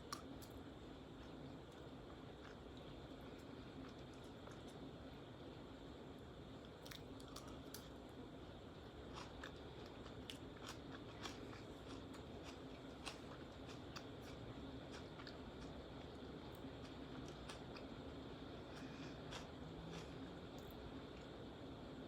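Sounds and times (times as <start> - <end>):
person chewing and crunching: 6.8 - 7.8, 8.8 - 18.0, 18.6 - 20.3.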